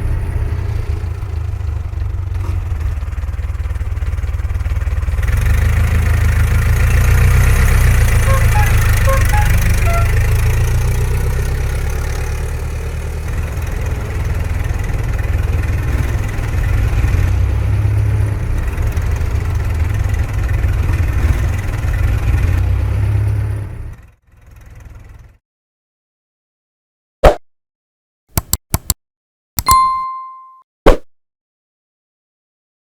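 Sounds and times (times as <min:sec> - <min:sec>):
car engine idling: 0:01.1 - 0:05.2.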